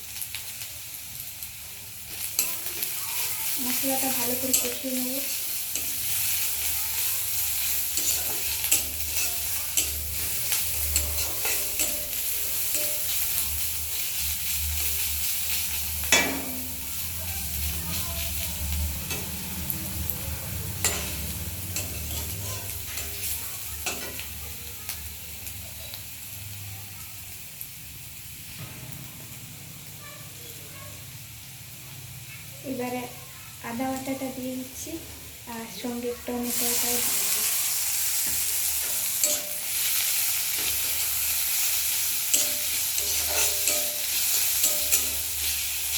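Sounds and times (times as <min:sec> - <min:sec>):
paste sizzling in hot oil: 0:00.0 - 0:45.9
spatula stirring and scraping: 0:02.1 - 0:24.3, 0:36.5 - 0:45.9
spatula knocking on pan: 0:16.1 - 0:16.9.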